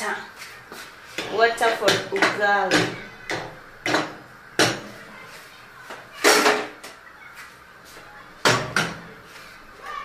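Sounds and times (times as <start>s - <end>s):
pots and utensils clattering: 1.1s - 5.0s, 6.2s - 6.9s.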